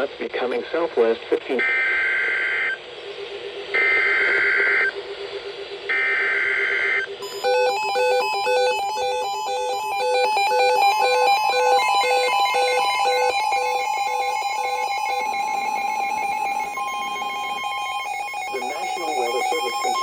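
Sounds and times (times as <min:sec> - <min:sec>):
steady high tone: 0:01.5 - 0:20.0
harsh buzzing digital data bursts: 0:01.6 - 0:20.0
electronic beeping alert tone: 0:05.9 - 0:20.0.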